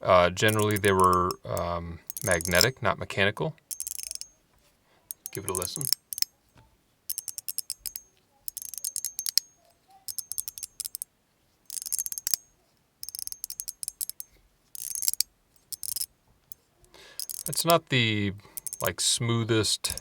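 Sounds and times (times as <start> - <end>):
fidget slider ratcheting clicks: 0.4 - 2.8, 3.6 - 4.3, 5.1 - 6.3, 7.1 - 11.1, 11.7 - 17.8, 18.5 - 18.9.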